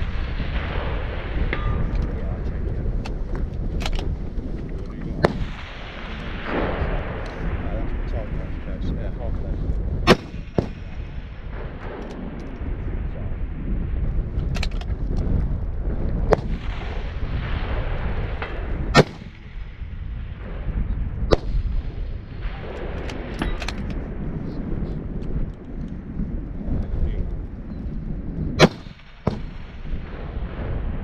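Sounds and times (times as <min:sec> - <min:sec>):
wind rumbling on microphone: 0:00.0 - 0:31.0
rifle shots: 0:05.2 - 0:07.8, 0:10.0 - 0:12.6, 0:16.3 - 0:20.7, 0:21.3 - 0:24.2, 0:28.6 - 0:31.0
rifle bolt clicks: 0:23.0 - 0:24.0.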